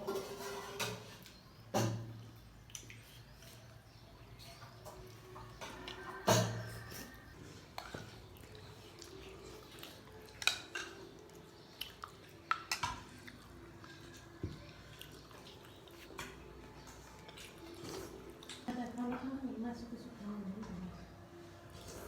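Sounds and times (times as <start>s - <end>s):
cutlery clinking on plates: 0.0s - 2.2s, 4.4s - 8.3s, 10.2s - 11.1s.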